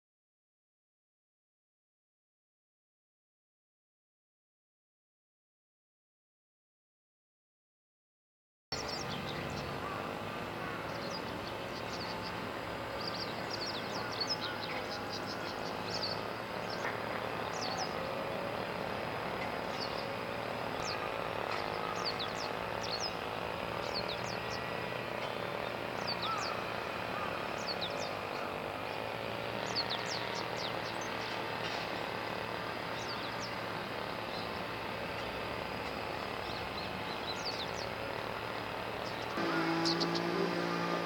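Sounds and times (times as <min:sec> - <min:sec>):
small birds chirping: 0:08.8 - 0:41.0.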